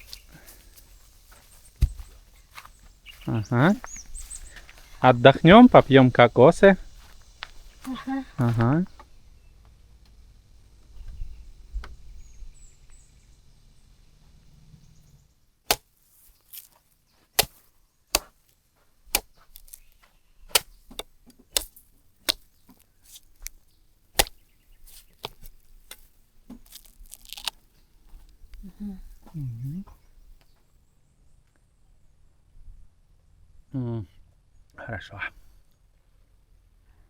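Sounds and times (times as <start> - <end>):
blade chopping coconuts: 1.8 - 2.7, 15.7 - 16.7, 17.4 - 18.4, 19.1 - 23.6, 24.2 - 27.6.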